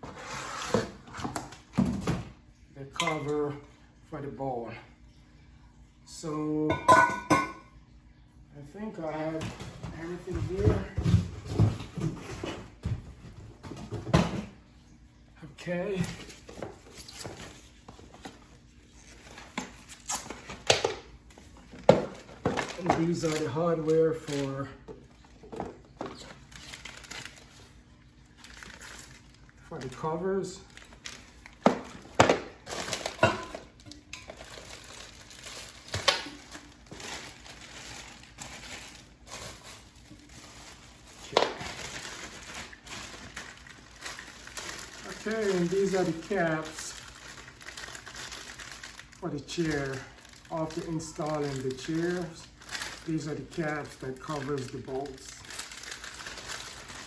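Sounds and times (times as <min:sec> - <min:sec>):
packaging rustling: 0:16.2 - 0:57.0.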